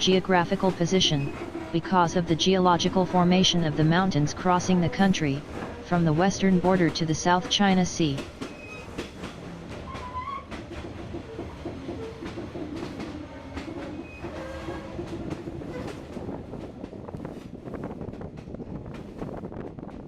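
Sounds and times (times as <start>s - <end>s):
train rumbling on track: 0.0s - 20.0s
train wheels clicking on rail joints: 8.2s - 17.5s.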